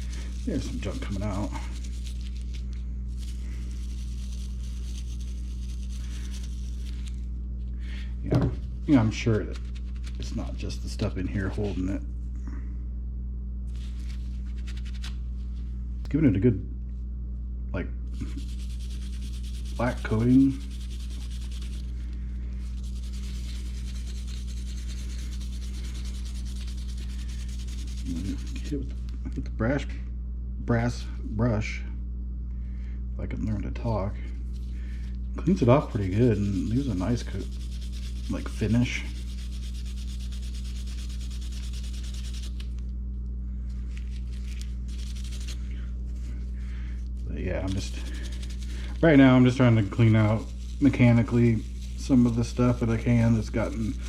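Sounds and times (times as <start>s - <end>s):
wire brush scrubbing rusted steel: 0.0s - 7.2s, 18.2s - 28.8s, 35.5s - 42.8s, 43.9s - 46.4s, 47.6s - 54.0s
low electrical hum: 0.0s - 54.0s.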